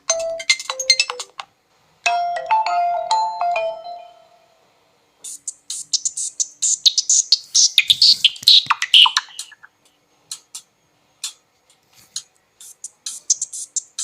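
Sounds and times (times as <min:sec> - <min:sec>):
electronic ringtone clicks and chirps: 0:00.0 - 0:01.4.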